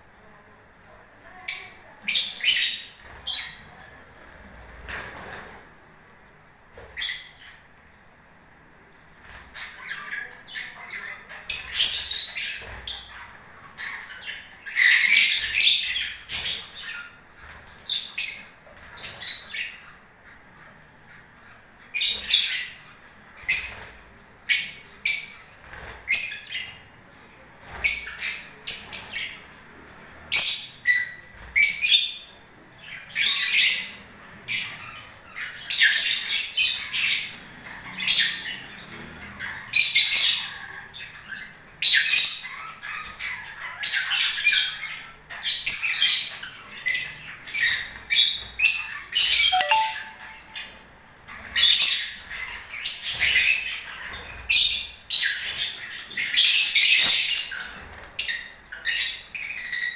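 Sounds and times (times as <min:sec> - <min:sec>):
lovebirds squawking and chirping: 0:30.3 - 0:59.9.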